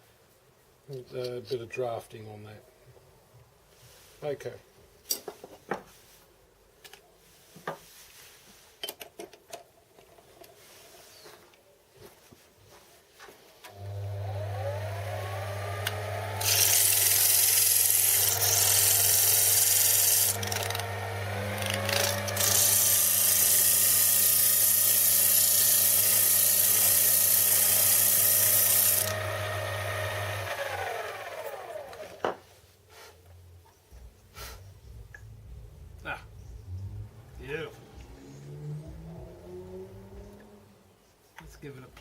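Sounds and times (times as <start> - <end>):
hand tool cutting on a lathe: 13.7 - 32.2
lathe motor running: 13.8 - 32.1.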